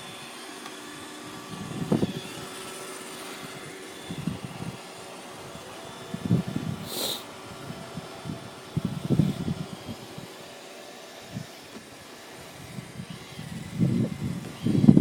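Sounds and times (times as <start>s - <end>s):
robot vacuum motor hum: 0.0s - 15.0s
short hiss: 6.8s - 7.3s.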